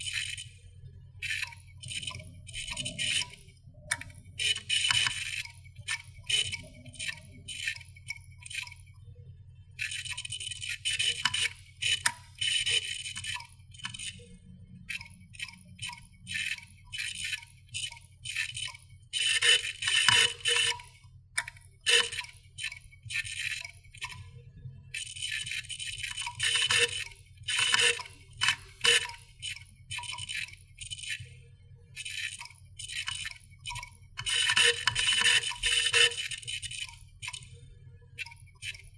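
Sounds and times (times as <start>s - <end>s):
low hum of spinning platters: 0.0s - 38.9s
hard drive head clicking and rattling: 32.0s - 37.5s.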